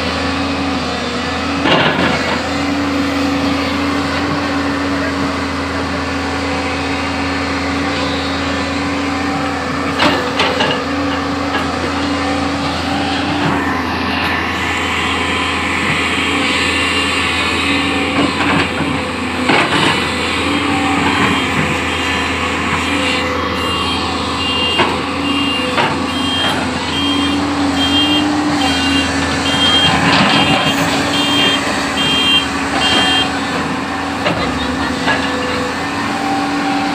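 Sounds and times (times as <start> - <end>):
diesel engine working: 0.0 - 36.9
two-tone reversing alarm beeping: 20.6 - 33.4.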